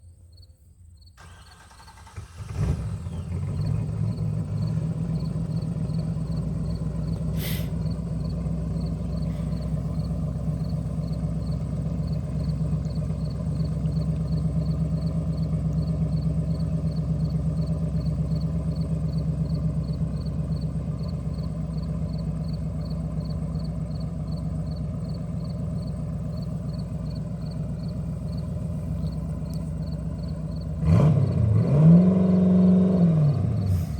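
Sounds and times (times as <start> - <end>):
sports car engine starting and idling: 1.1 - 33.9.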